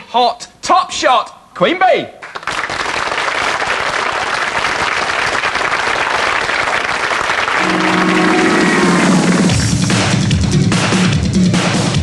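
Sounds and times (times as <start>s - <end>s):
audience applauding: 2.2s - 9.7s
held electric note: 7.6s - 9.8s.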